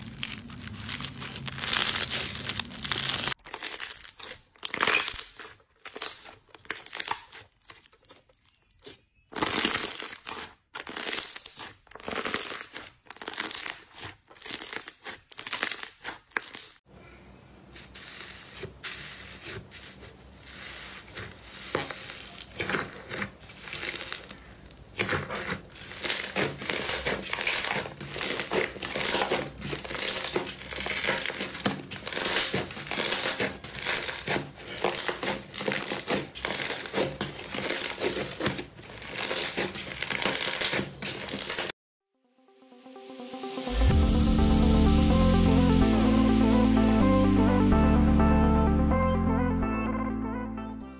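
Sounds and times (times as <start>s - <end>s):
slime crackling and popping: 0.0s - 16.8s, 20.7s - 41.7s.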